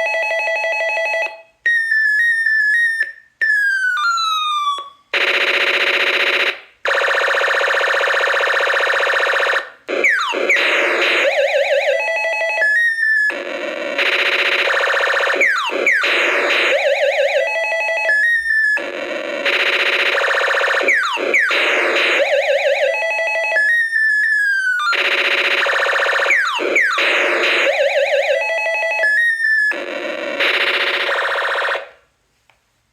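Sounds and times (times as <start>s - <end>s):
toy laser gun sound effects: 1.7s - 31.9s.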